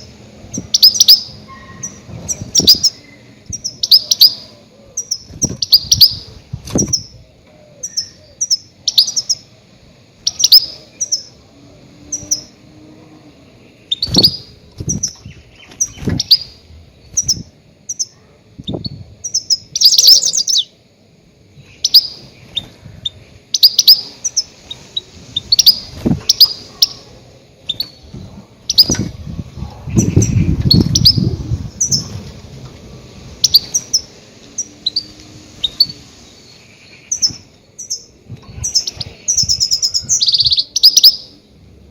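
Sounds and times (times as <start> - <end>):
goldfinch chirps: 0.5 - 7.1, 7.8 - 9.5, 10.2 - 11.4, 13.8 - 18.1, 19.2 - 20.7, 21.6 - 27.1, 27.7 - 29.1, 33.4 - 41.4
low rumble: 27.9 - 33.9.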